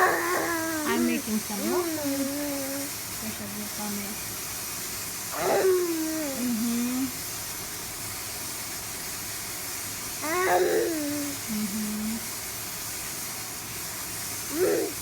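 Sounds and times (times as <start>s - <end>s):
baby vocalizing: 0.0s - 2.9s, 5.4s - 6.5s, 10.2s - 11.4s, 14.5s - 15.0s
steady hiss: 0.0s - 15.0s.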